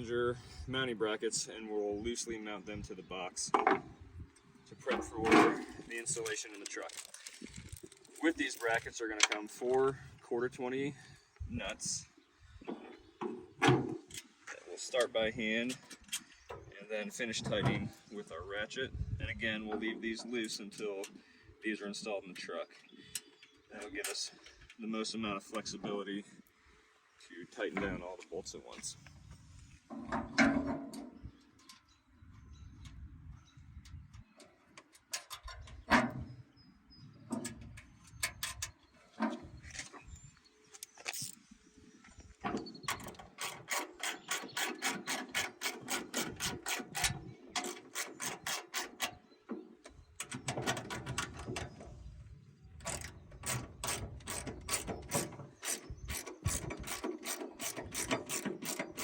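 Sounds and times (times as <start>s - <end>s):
metal parts knocking and clinking: 5.2s - 9.4s, 52.8s - 59.0s.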